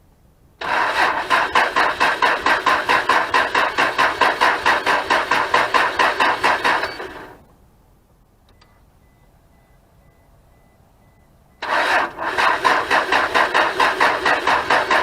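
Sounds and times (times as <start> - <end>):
starter cranking engine: 0.6 - 7.4, 11.6 - 15.0.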